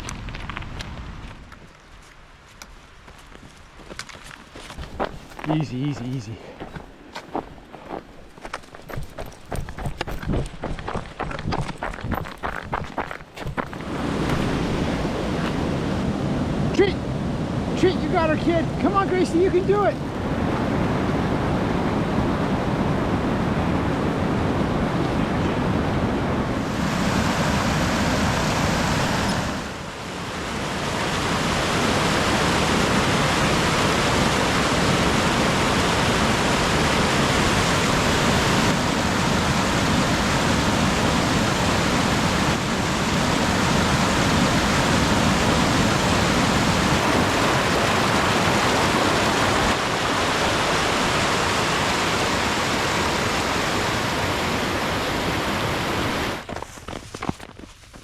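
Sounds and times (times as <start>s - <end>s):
waterfall rushing: 13.8s - 22.8s, 26.5s - 56.4s.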